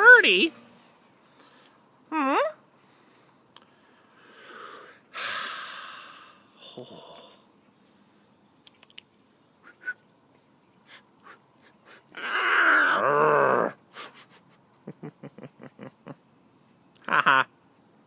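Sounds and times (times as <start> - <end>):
crickets singing: 0.0 - 18.0
macaw call: 17.0 - 17.5.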